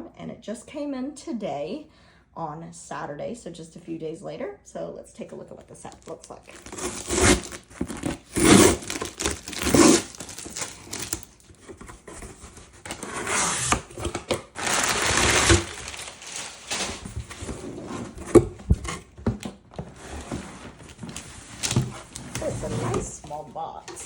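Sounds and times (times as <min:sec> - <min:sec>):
packaging crinkling and rustling: 0:05.8 - 0:23.4.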